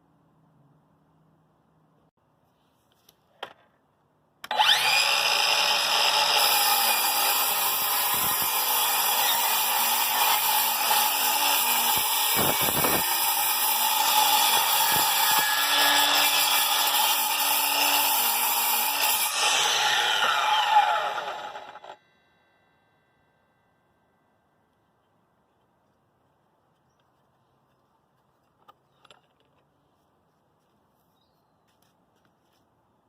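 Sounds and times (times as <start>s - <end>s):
miter saw motor whining: 4.4s - 13.2s, 19.1s - 22.0s.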